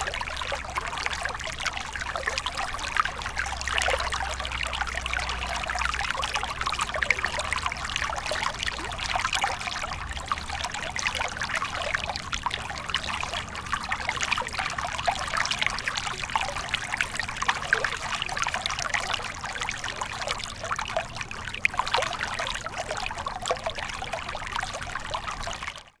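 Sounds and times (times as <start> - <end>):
stream trickling over stones: 0.0 - 26.0.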